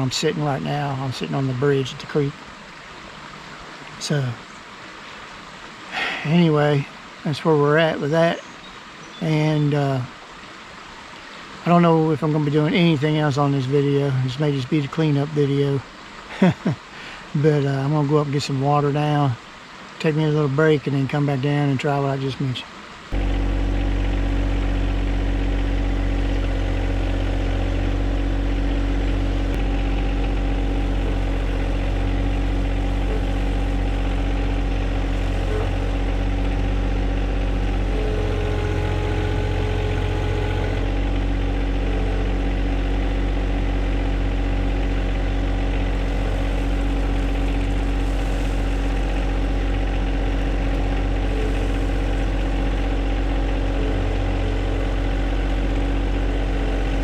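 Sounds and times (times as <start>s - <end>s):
tractor diesel engine running: 0.0s - 10.6s, 23.0s - 57.0s.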